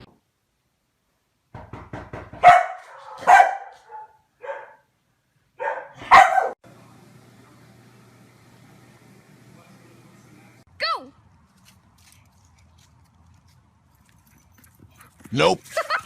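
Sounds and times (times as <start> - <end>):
dog barking: 2.4 - 4.9, 5.6 - 6.6.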